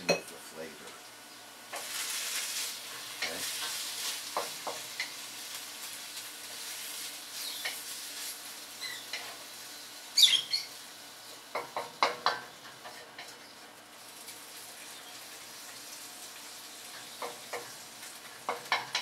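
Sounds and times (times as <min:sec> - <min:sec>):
food sizzling in a pan: 0:00.0 - 0:19.0
utensil knocking a pan: 0:11.5 - 0:12.4.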